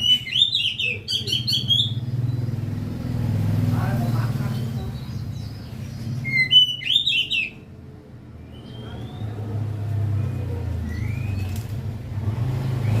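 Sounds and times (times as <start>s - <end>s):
bird singing warbled notes: 0.0s - 2.8s, 5.1s - 7.7s.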